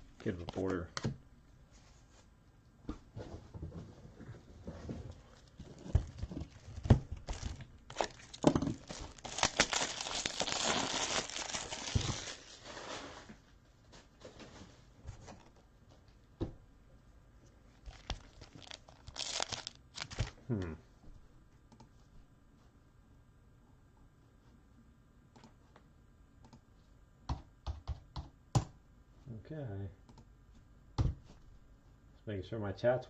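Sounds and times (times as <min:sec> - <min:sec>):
wrapper being torn and crinkled: 0:05.4 - 0:13.3, 0:17.8 - 0:20.4.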